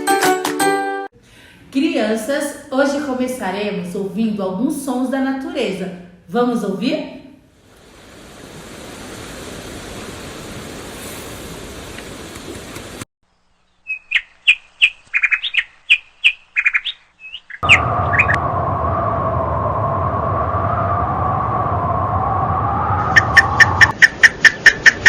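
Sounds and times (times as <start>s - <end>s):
bird chirping: 13.2s - 18.4s
low droning rumble: 17.6s - 23.9s
steady even noise: 17.6s - 24.0s.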